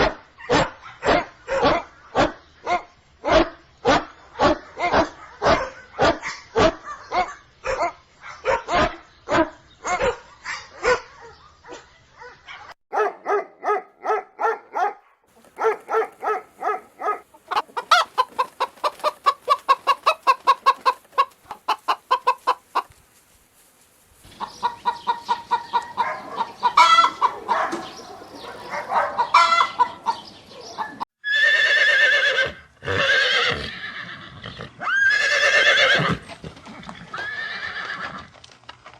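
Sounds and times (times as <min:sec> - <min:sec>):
dog barking: 0:00.0 - 0:17.6, 0:24.8 - 0:31.0
chickens clucking: 0:15.3 - 0:23.0, 0:24.2 - 0:31.0
hen cackling: 0:15.3 - 0:23.0, 0:24.3 - 0:34.1.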